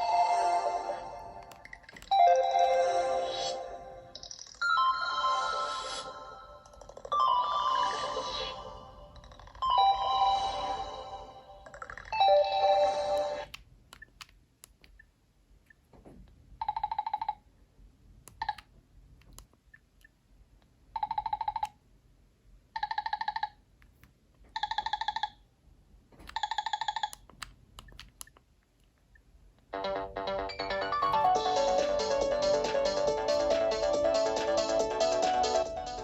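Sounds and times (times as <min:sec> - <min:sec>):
musical ringtone: 0:00.0 - 0:09.0, 0:09.6 - 0:13.4, 0:29.8 - 0:36.0
trilling phone ring tone: 0:09.6 - 0:13.4.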